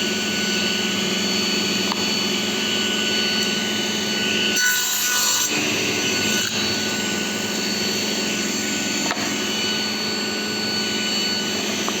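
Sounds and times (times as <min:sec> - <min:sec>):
power tool motor running: 0:05.2 - 0:12.0.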